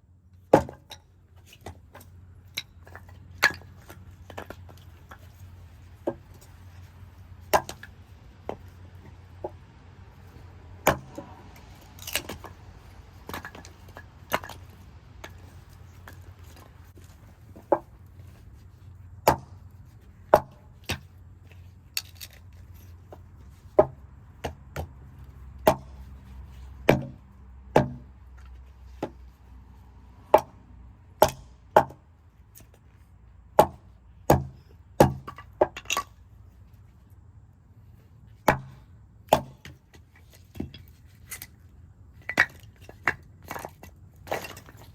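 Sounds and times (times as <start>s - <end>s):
axe chopping wood: 0.5s - 1.0s, 7.5s - 8.7s, 10.8s - 12.6s, 13.2s - 17.9s, 19.2s - 19.7s, 20.3s - 21.0s, 23.7s - 25.0s, 25.6s - 26.0s, 26.8s - 28.1s, 30.3s - 30.6s, 31.2s - 32.0s, 33.5s - 36.0s, 38.4s - 40.8s.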